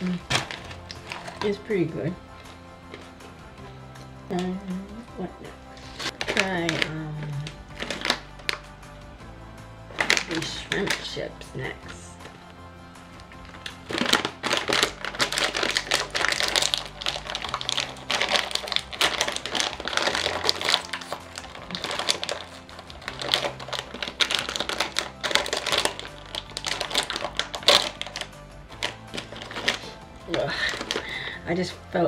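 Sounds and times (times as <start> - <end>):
plastic snack bag crinkling: 0.0 - 1.6, 5.7 - 8.7, 9.9 - 12.0, 13.2 - 31.4
soft background music: 0.0 - 32.0.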